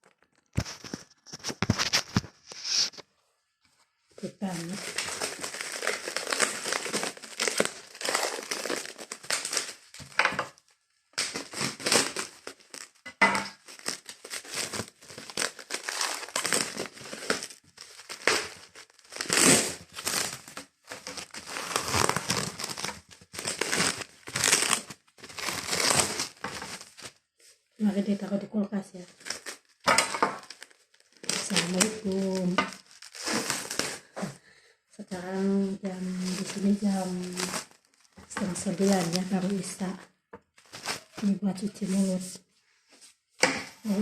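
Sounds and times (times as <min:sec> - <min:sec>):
plastic bag crinkling: 0:00.0 - 0:03.0, 0:04.2 - 0:27.2, 0:29.1 - 0:34.3, 0:35.1 - 0:42.3.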